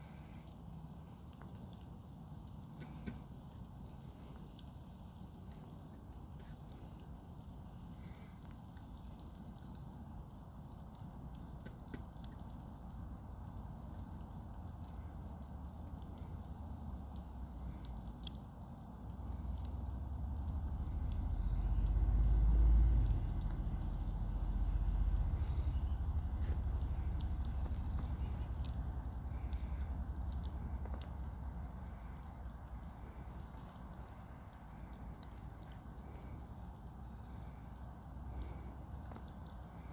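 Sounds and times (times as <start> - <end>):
campfire crackling and popping: 0.0 - 39.9
low rumble: 19.7 - 33.4
bird chirps: 21.2 - 22.8, 23.8 - 28.8.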